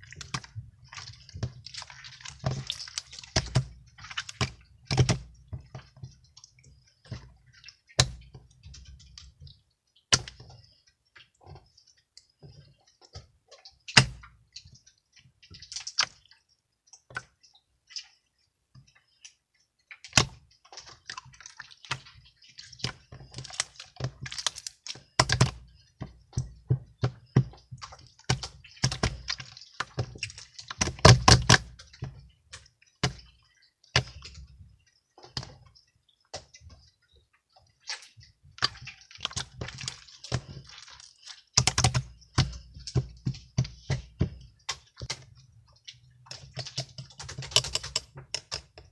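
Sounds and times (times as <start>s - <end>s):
irregular clicks and taps: 41.3s - 48.9s.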